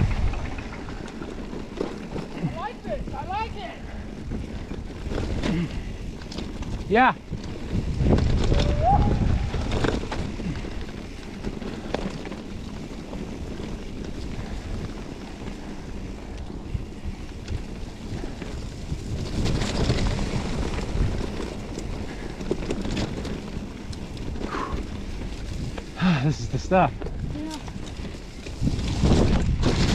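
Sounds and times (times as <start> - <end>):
small clicks and rattles: 0.0 - 29.9
tyres rumbling on dirt: 0.0 - 29.9
wind buffeting microphone: 0.0 - 29.9.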